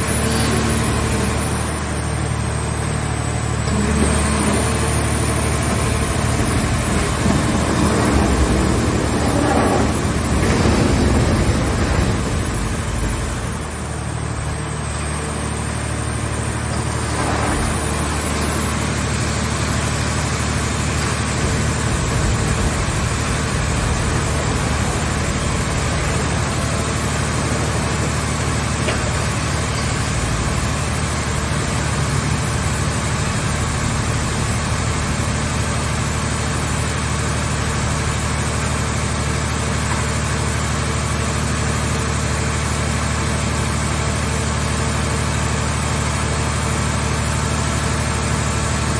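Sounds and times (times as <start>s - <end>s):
hydraulic power unit engine humming: 0.0s - 48.9s.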